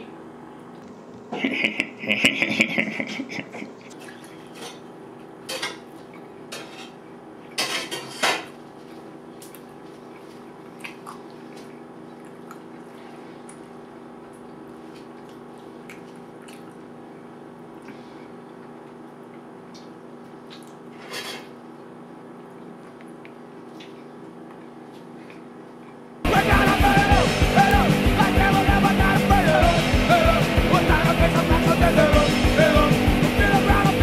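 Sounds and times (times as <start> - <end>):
kitchenware clinking: 4.0 - 4.9, 5.5 - 5.9, 6.5 - 7.0, 7.6 - 8.5
steady hum: 8.6 - 34.0.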